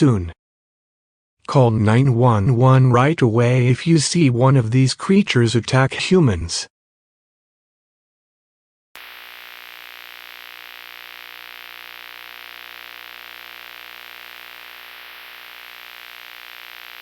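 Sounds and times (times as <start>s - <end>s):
faint electrical hum: 9.0s - 17.0s
static hiss: 9.0s - 17.0s.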